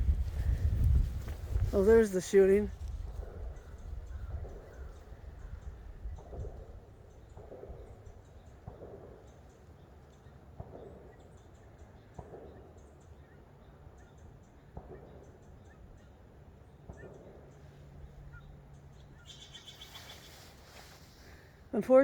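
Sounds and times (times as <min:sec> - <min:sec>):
footsteps on a trail: 0:00.0 - 0:03.3
distant gunshots: 0:06.2 - 0:09.6, 0:10.5 - 0:11.3, 0:12.1 - 0:12.8, 0:14.7 - 0:15.4.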